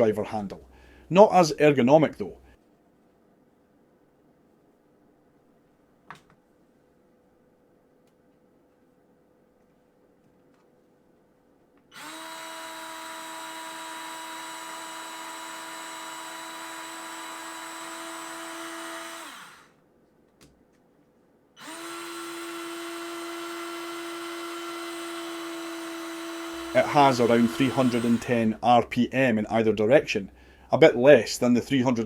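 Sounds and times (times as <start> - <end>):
electric screwdriver whine: 11.9 - 19.7, 21.6 - 28.5.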